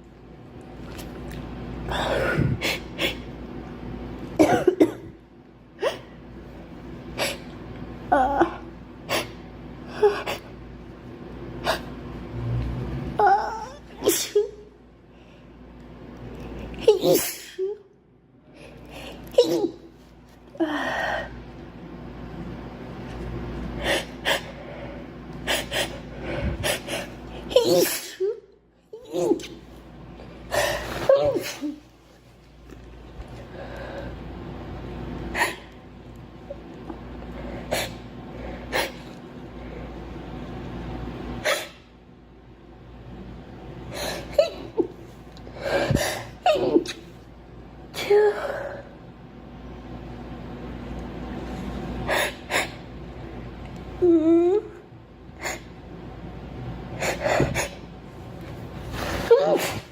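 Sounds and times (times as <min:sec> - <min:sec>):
girl sneezing: 0:16.8 - 0:17.8, 0:19.3 - 0:19.9, 0:27.5 - 0:28.4, 0:59.2 - 0:59.9.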